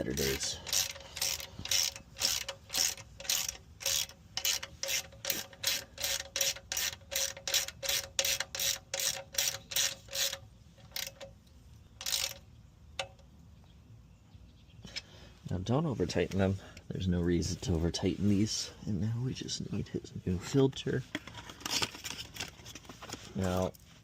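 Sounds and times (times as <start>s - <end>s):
hand ratchet clicking: 0.0s - 11.4s, 12.0s - 12.4s.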